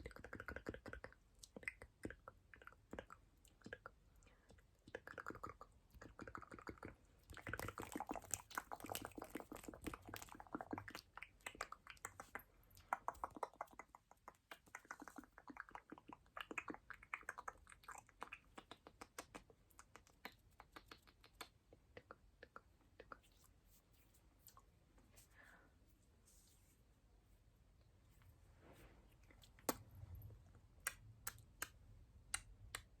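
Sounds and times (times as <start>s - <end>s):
wet mouth clicks and smacks: 0.0s - 23.4s, 29.2s - 33.0s
soft breathing: 24.9s - 26.9s, 28.1s - 30.6s.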